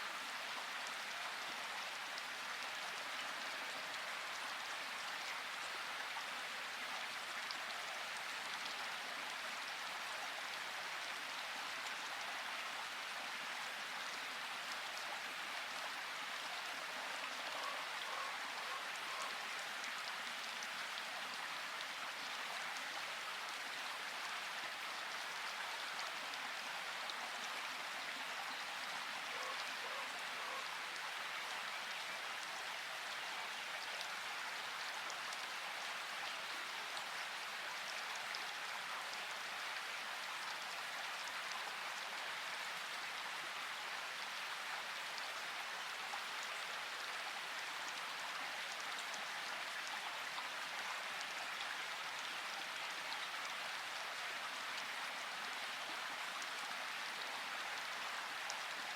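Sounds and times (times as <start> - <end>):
steady rain: 0.0 - 58.9.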